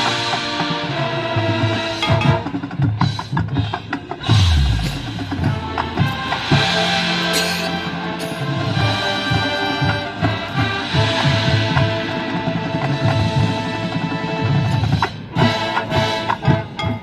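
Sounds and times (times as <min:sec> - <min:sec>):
marching band music: 0:00.0 - 0:17.0
bass drum boom: 0:04.3 - 0:05.6.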